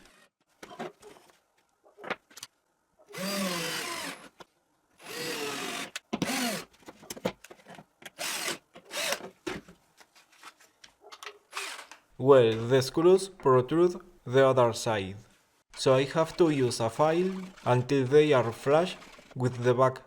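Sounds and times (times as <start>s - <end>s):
power drill driving screws: 3.1s - 4.3s, 5.0s - 6.7s, 8.2s - 9.3s, 11.5s - 12.0s, 17.2s - 19.4s.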